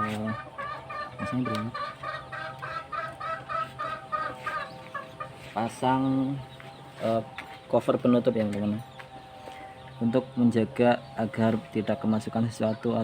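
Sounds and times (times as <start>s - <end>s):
chicken clucking: 0.0s - 10.6s.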